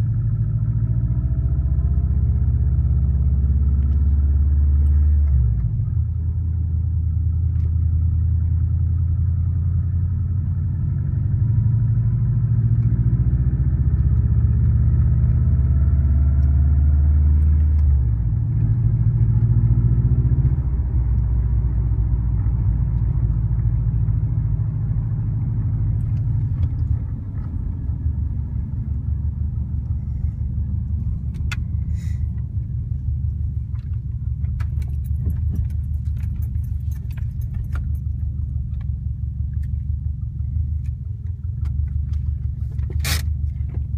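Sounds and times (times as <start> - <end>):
car engine idling: 20.4 - 43.9.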